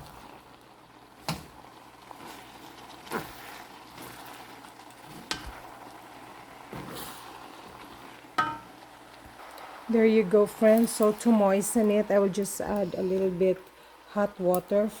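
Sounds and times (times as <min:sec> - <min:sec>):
food sizzling in a pan: 0:00.0 - 0:15.0.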